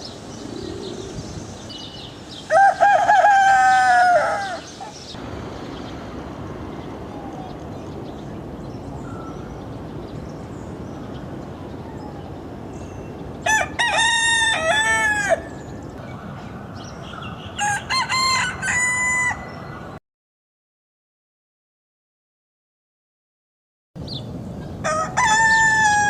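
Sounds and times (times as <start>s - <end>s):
steady background noise: 0.0s - 20.0s
rooster crowing: 2.5s - 4.8s, 13.5s - 15.6s, 17.6s - 19.8s, 24.8s - 26.0s.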